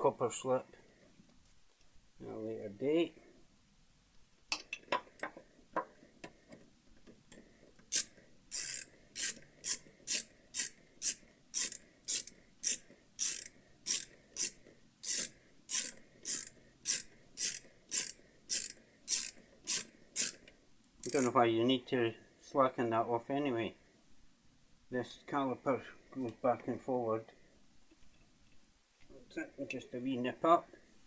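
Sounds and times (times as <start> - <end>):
ratchet wrench clicking: 7.9 - 20.4, 21.0 - 21.3.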